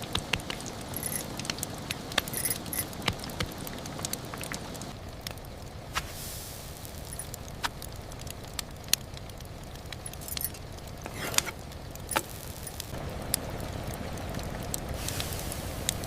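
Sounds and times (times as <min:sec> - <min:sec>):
sharp ticks and clicks: 0:00.0 - 0:05.5, 0:06.9 - 0:10.9, 0:11.9 - 0:14.8
rain noise: 0:00.0 - 0:16.0.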